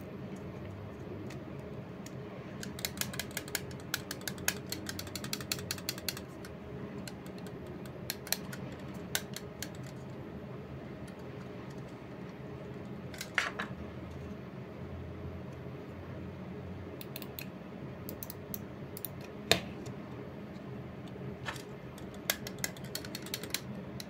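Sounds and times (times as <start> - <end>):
plastic mouse clicks: 2.6 - 10.0, 22.0 - 24.0.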